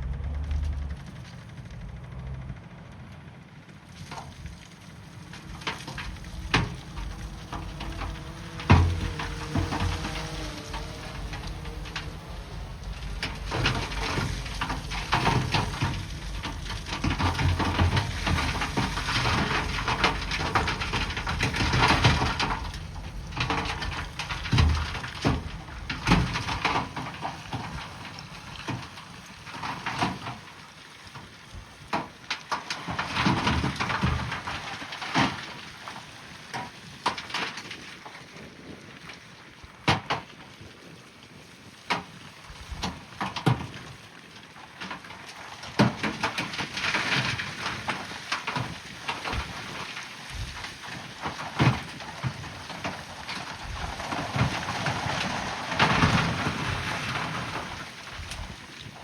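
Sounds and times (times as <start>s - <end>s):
low engine rumble: 0.0s - 29.0s
bulldozer clattering on rock: 4.1s - 30.5s, 31.9s - 35.7s, 44.8s - 59.0s.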